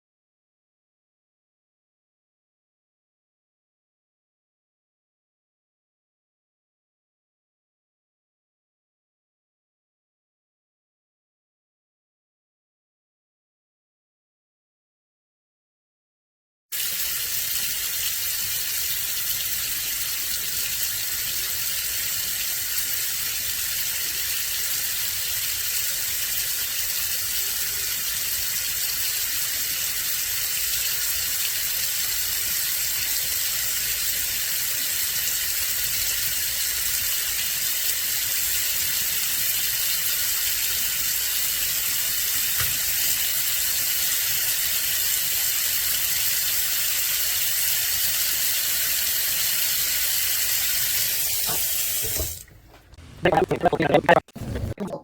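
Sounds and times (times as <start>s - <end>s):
running water: 16.8s - 55.0s.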